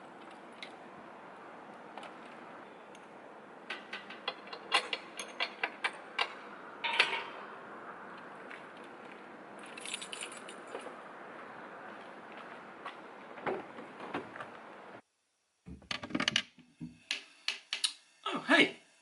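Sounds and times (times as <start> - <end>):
steady low hiss: 0.0 - 19.0.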